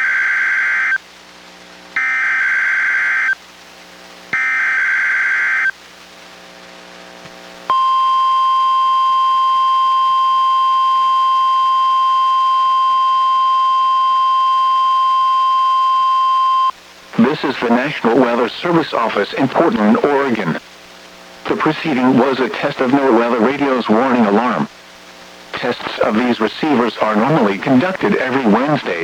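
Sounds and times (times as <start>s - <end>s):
steady alarm tone: 2.0s - 3.4s, 4.4s - 5.7s.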